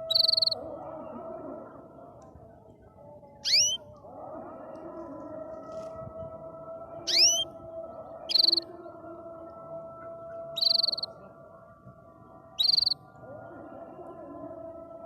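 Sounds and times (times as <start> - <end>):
canary singing: 0.0 - 0.6, 3.4 - 3.9, 7.1 - 7.5, 8.3 - 8.7, 10.5 - 11.1, 12.6 - 13.0.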